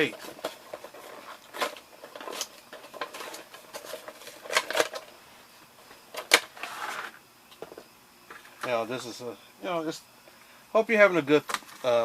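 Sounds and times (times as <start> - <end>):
plastic packaging rustling: 0.0 - 5.2.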